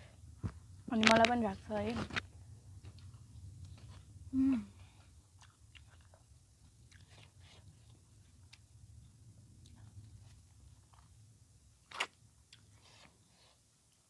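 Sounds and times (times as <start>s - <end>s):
person chewing food: 4.8s - 8.7s, 9.4s - 11.2s, 11.8s - 14.0s.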